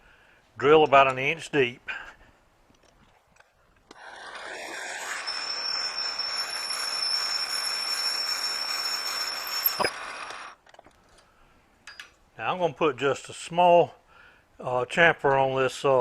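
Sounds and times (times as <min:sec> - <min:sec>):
lathe drill cutting hiss and whine: 0:04.0 - 0:10.5.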